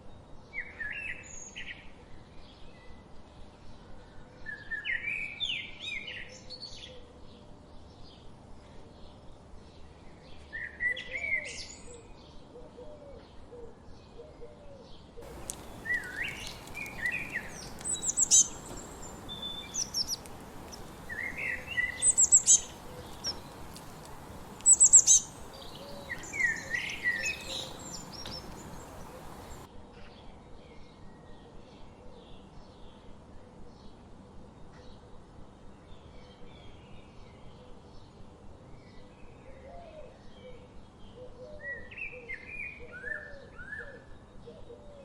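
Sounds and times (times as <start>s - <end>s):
songbirds singing: 15.2s - 29.7s
steady background hiss: 15.2s - 29.7s.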